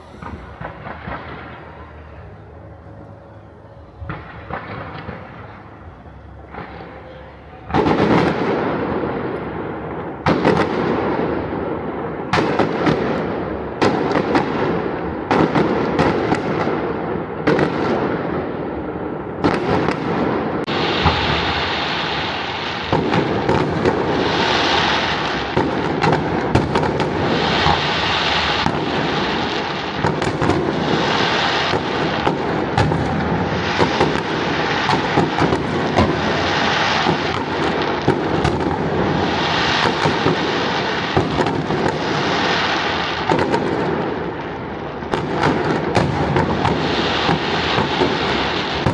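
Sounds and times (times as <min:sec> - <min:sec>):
fireworks bangs: 0:00.0 - 0:48.9
fireworks crackling: 0:00.0 - 0:48.9.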